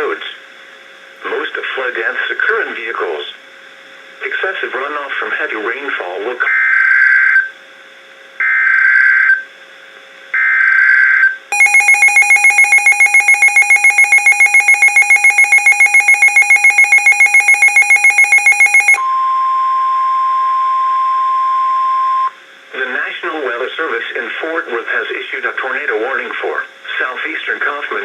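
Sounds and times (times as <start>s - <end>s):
steady warning alarm tone: 11.5s - 19.3s
pulsing buzzy alert tone: 11.6s - 19.0s
screeching digital data bursts: 11.6s - 19.0s.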